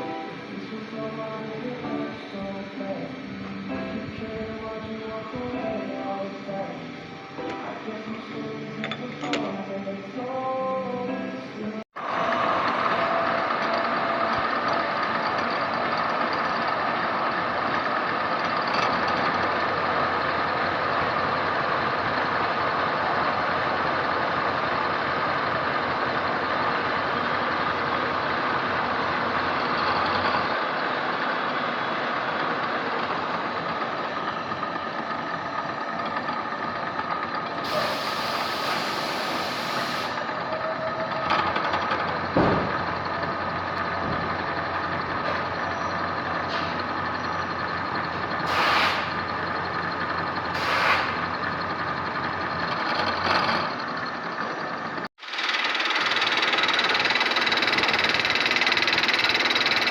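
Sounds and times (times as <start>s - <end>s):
milling machine whining: 0.0s - 59.9s
short hissing bursts: 37.7s - 40.2s, 48.5s - 49.2s, 50.6s - 51.2s.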